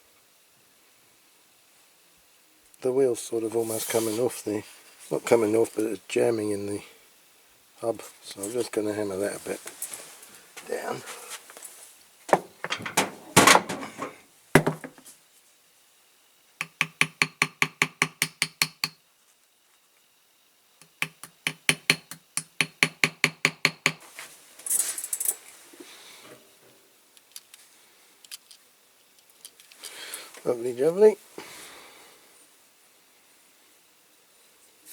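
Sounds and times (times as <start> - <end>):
brief hiss: 3.5 - 5.2
small hammer tapping metal: 16.6 - 19.0, 20.8 - 24.0.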